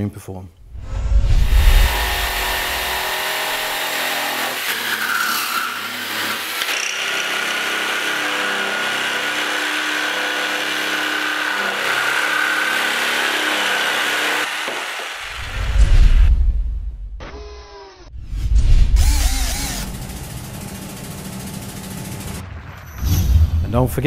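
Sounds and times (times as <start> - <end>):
jigsaw cutting timber: 1.6 - 15.6, 17.2 - 18.1, 19.0 - 22.4.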